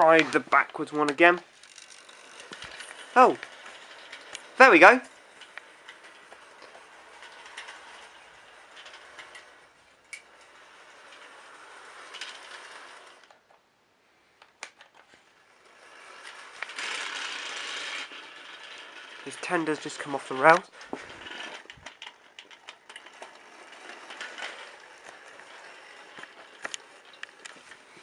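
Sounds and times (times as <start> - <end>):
model train motor whirring: 0.0 - 13.4, 14.6 - 28.0
wheels clicking on track: 0.0 - 13.5, 14.6 - 28.0.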